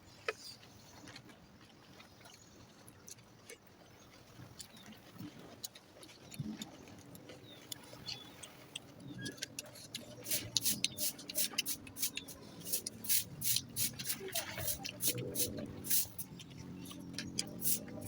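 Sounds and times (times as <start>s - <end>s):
chewing with wet lip-smacking: 1.0s - 18.0s
sharp mouth clicks: 7.7s - 18.0s.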